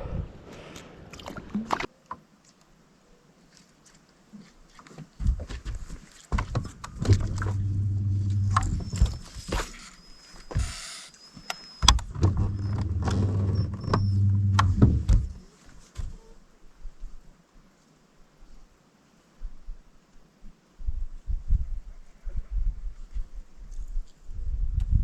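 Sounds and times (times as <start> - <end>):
short hiss: 10.6 - 11.2.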